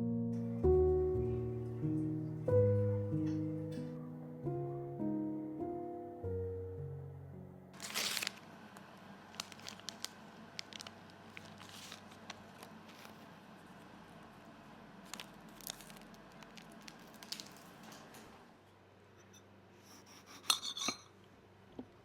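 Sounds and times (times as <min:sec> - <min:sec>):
handling rustle: 0:07.8 - 0:08.4, 0:09.3 - 0:13.3, 0:15.1 - 0:18.2
small clicks and crinkles: 0:07.8 - 0:13.3, 0:15.0 - 0:18.4.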